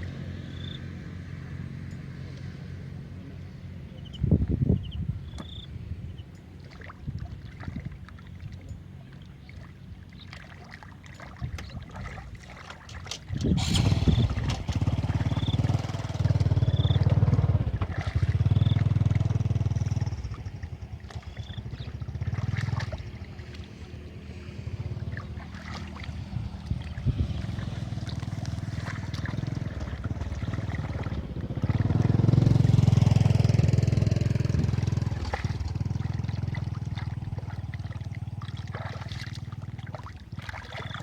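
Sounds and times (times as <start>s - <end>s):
small engine humming: 13.2s - 41.0s.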